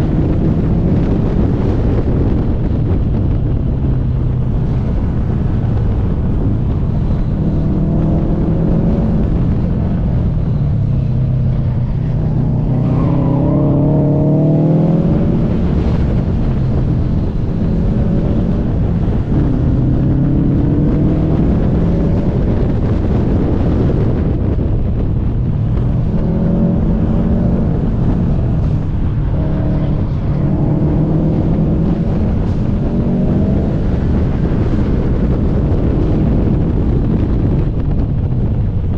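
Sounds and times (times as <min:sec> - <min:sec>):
car engine accelerating: 0:00.0 - 0:38.9
road rumble: 0:00.0 - 0:38.9
wind noise: 0:00.0 - 0:38.9.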